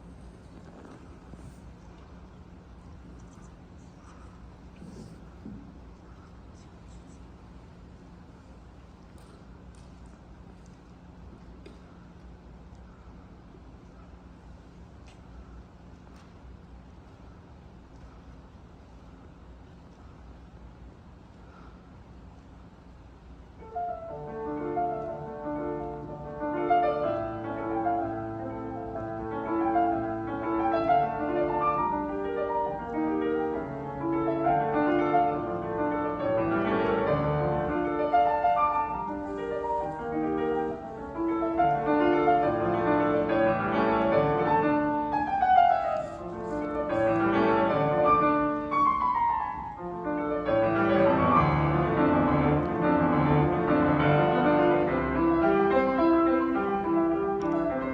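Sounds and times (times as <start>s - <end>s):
fast solo piano piece: 23.6s - 57.9s.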